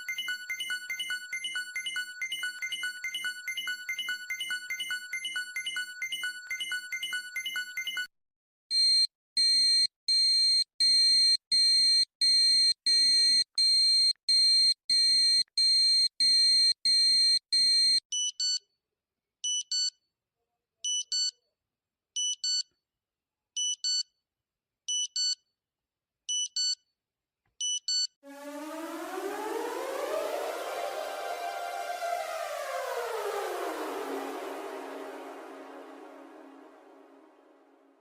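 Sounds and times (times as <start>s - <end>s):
warble under beeps: 28.3s - 37.4s.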